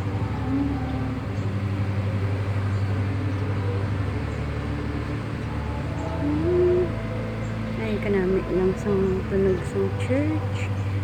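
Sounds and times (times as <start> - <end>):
low engine hum: 0.0 - 11.0.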